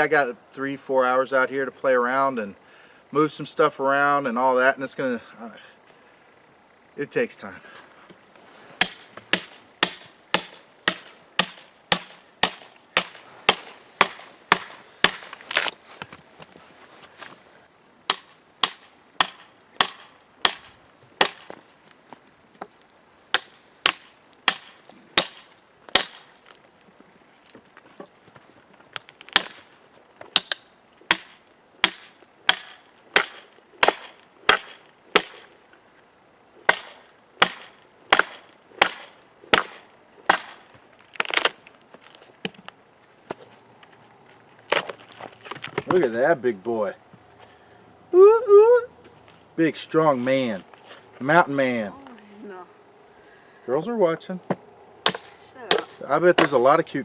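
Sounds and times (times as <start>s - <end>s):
chopping into wood: 8.8s - 15.7s, 18.1s - 21.6s, 23.3s - 26.2s, 29.3s - 29.7s, 30.3s - 35.5s, 36.6s - 40.6s, 54.5s - 56.6s.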